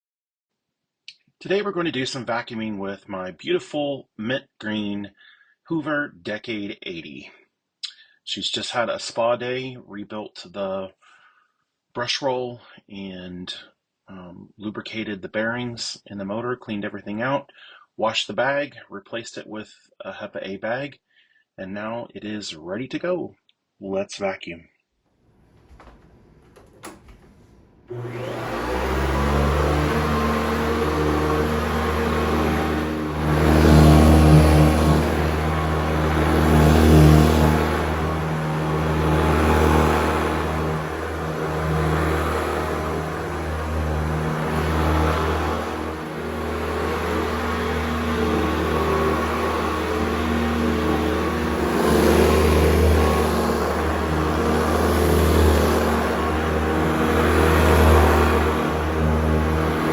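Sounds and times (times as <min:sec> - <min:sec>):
brush roll rumbling: 0:25.4 - 0:59.9
vacuum cleaner switching on: 0:25.4 - 0:59.9
vacuum motor humming: 0:25.4 - 0:59.9.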